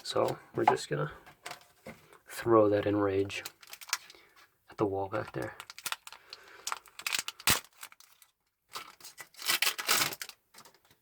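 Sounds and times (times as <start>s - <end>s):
foil wrapper tearing: 3.4s - 4.2s, 5.2s - 10.7s.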